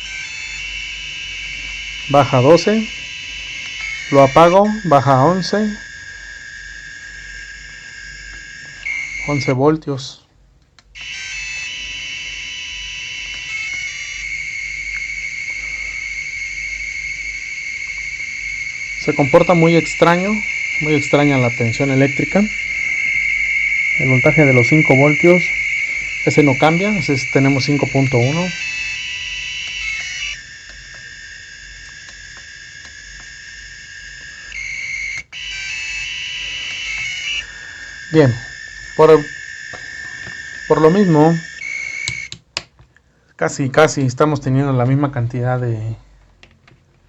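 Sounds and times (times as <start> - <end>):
high-pitched electronic whine: 0.0 - 9.9, 11.0 - 42.4.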